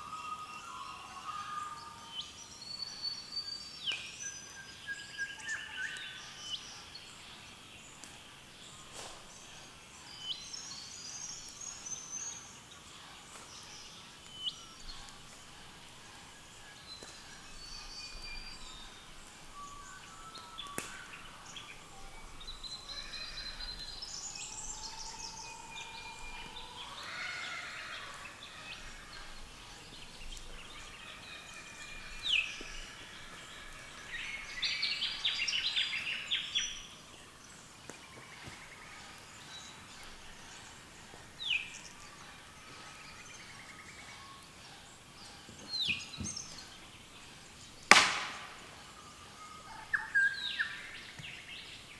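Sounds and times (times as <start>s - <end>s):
birds chirping and trilling: 4.3s - 51.9s.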